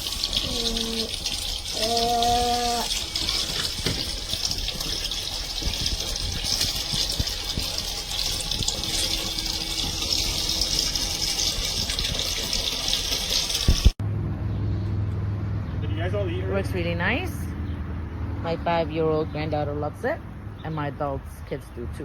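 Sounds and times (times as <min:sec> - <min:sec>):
water spraying: 0:00.0 - 0:14.0.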